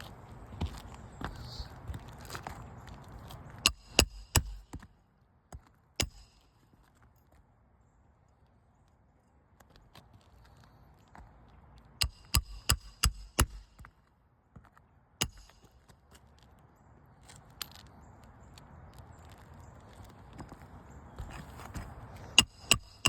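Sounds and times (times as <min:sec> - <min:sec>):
hammer striking roofing nails: 0:03.7 - 0:04.9, 0:06.0 - 0:06.4, 0:12.0 - 0:13.9, 0:15.2 - 0:15.7, 0:22.4 - 0:23.0.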